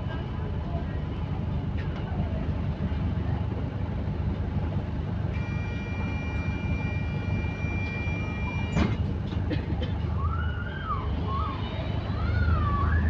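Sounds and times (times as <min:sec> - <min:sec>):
bus engine rumbling: 0:00.0 - 0:13.0
emergency siren wailing: 0:05.4 - 0:08.9, 0:10.2 - 0:13.0.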